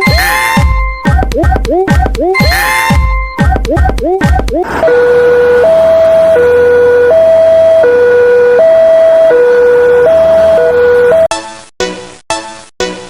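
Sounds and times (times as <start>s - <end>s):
two-tone siren: 0.0s - 0.9s, 2.1s - 11.3s.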